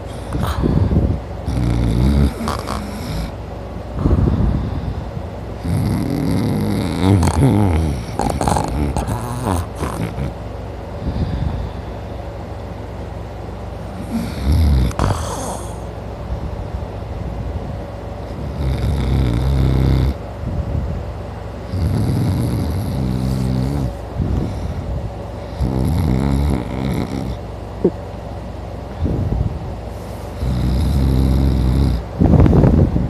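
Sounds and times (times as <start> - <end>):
man snoring loudly: 1.4 - 3.4, 5.6 - 10.4, 14.0 - 15.9, 18.3 - 20.2, 21.7 - 24.0, 25.4 - 27.4, 30.4 - 32.1.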